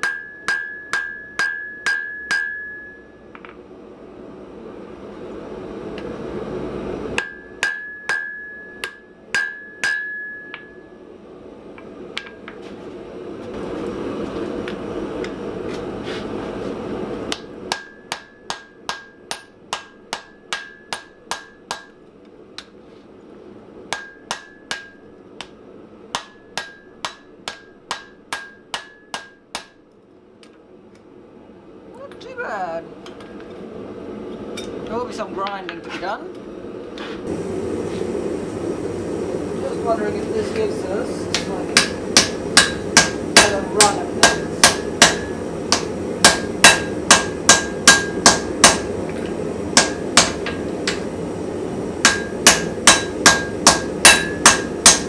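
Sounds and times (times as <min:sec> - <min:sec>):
hammer ringing on anvil: 0:00.0 - 0:03.6, 0:07.2 - 0:10.9, 0:17.3 - 0:21.9, 0:23.9 - 0:25.0, 0:26.2 - 0:29.8, 0:41.3 - 0:48.9, 0:49.8 - 0:51.1, 0:52.0 - 0:55.0
steady rushing noise: 0:37.2 - 0:55.0.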